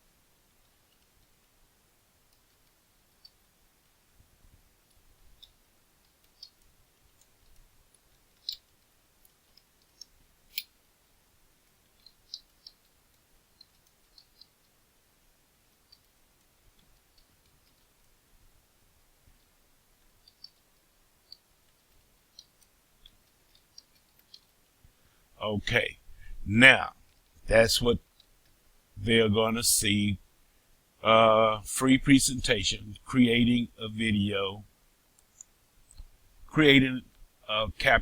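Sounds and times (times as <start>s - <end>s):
mouse and keyboard clicks: 11.6s - 14.8s, 20.2s - 20.7s.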